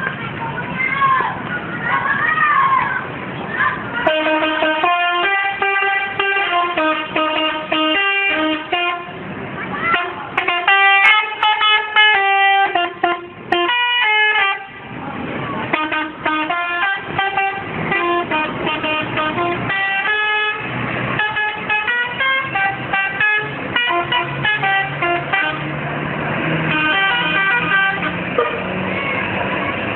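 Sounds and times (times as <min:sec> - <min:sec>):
multi-tone air horn melody: 0:04.0 - 0:09.2, 0:09.9 - 0:14.8, 0:15.7 - 0:25.7, 0:26.7 - 0:28.7.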